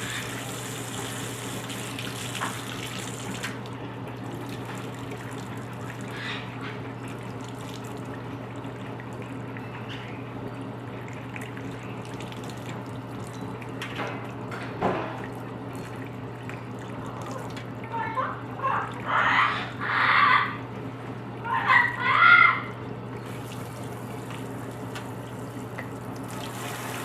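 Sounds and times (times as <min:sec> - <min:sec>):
water running from a tap: 0:00.0 - 0:09.2, 0:14.9 - 0:19.4, 0:23.2 - 0:27.0.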